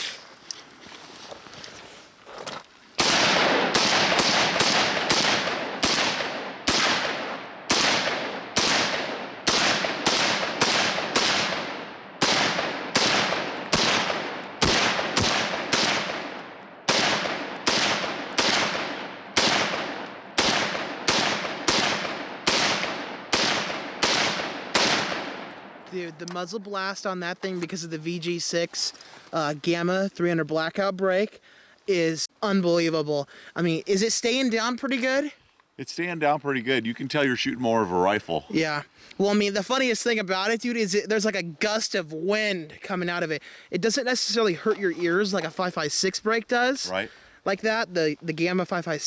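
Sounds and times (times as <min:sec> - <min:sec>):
rapid gunshots with echo: 0:03.0 - 0:25.9.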